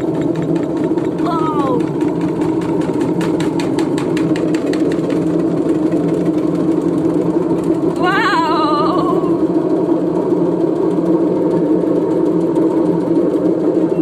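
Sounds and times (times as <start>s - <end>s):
washing machine humming: 0.0s - 14.0s
washing machine knocking rapidly: 0.0s - 14.0s.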